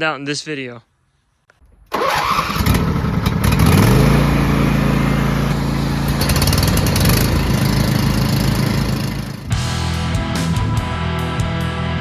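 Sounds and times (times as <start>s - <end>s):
lawn mower engine: 1.9s - 9.8s.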